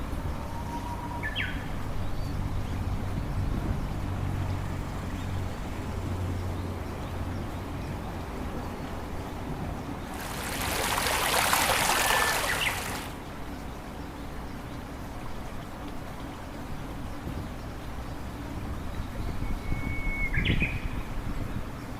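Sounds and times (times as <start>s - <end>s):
rushing water: 3.9s - 19.2s.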